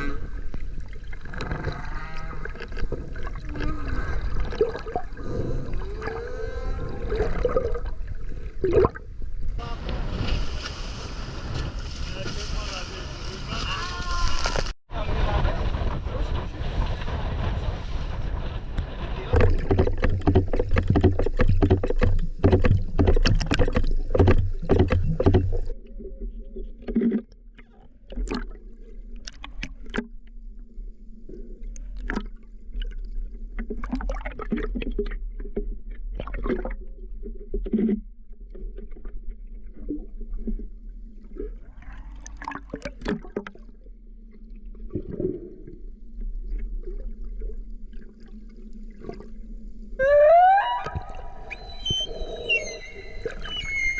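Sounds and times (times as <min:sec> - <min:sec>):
water splashing: 0:00.0 - 0:14.8, 0:16.3 - 0:30.2, 0:38.6 - 0:43.9
wind: 0:00.0 - 0:53.9
knocks against boat: 0:19.4 - 0:25.7.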